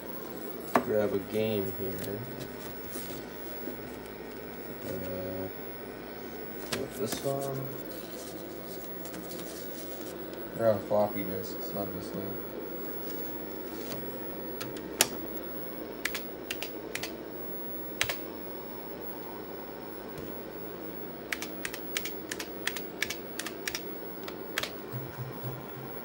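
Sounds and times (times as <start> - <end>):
steady low hum: 0.0 - 26.0
keyboard keys clicking: 16.0 - 17.2, 18.0 - 18.2, 21.3 - 24.8.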